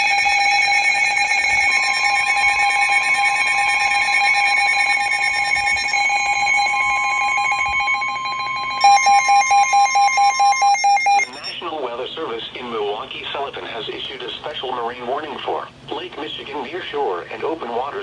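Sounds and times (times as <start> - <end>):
buzzing alarm tone: 0.0 - 11.6
rapid alarm beeps: 0.0 - 11.7
steady pure tone: 0.0 - 17.8.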